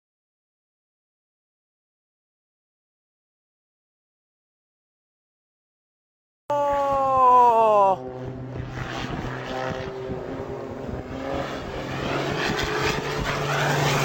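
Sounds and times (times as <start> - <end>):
aircraft engine drone: 6.5 - 14.0.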